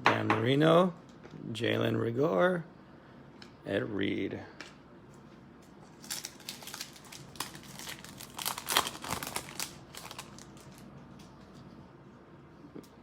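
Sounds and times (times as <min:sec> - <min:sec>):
plastic wrapper crinkling and tearing: 0:05.8 - 0:11.4.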